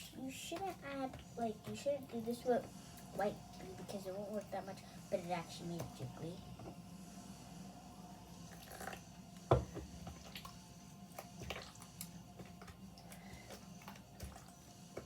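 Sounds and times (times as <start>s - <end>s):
knock: 9.5s - 9.9s.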